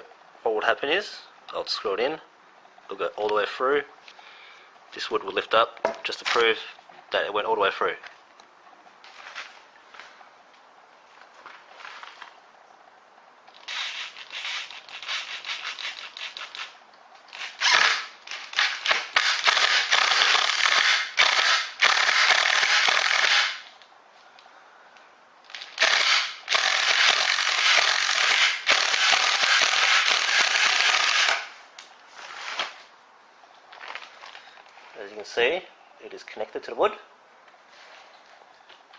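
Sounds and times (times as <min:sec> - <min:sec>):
power driver driving screw into wood: 0:13.6 - 0:16.7, 0:17.3 - 0:23.7, 0:25.5 - 0:31.5.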